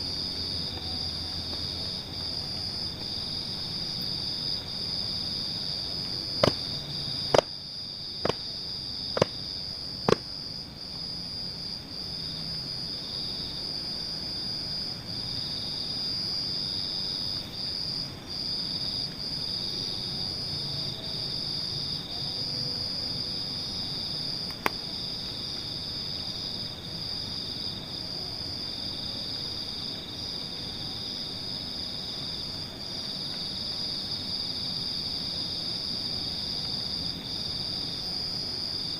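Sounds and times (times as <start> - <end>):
crickets chirping: 0.0 - 38.9.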